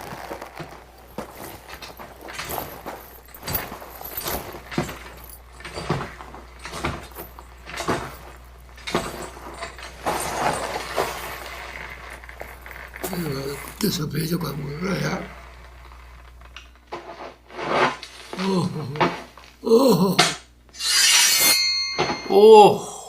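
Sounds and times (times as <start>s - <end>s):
scraping and rustling: 0.0s - 19.6s
knocks clicks and clattering: 0.7s - 13.8s.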